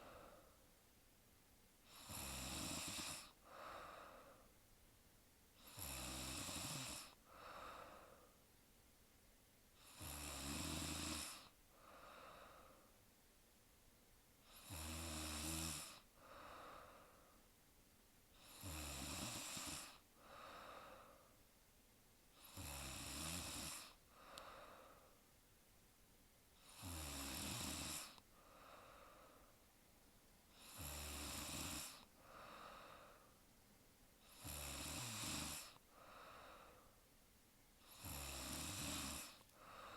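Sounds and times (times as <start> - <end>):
woman snoring: 1.8 - 4.4, 5.6 - 8.3, 9.8 - 12.8, 14.4 - 17.2, 18.4 - 21.3, 22.4 - 25.1, 26.6 - 29.2, 30.5 - 33.3, 34.2 - 36.9, 37.8 - 39.9.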